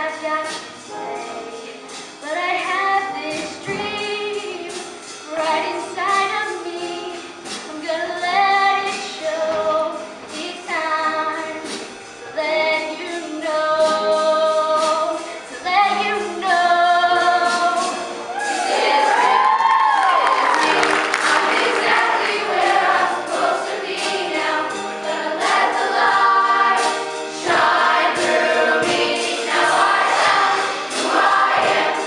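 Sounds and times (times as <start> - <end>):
percussion beat: 15.9 - 32.0
group of voices singing: 16.5 - 32.0.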